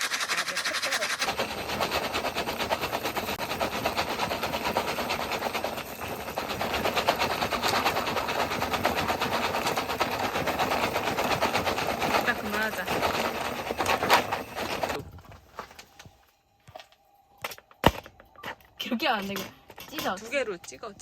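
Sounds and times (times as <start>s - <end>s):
popcorn crackling and popping: 0.0s - 16.1s.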